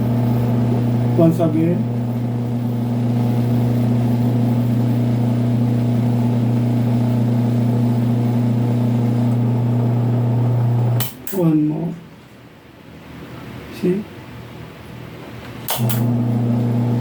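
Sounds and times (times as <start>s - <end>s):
electric motor humming: 0.0s - 11.2s, 15.7s - 17.0s.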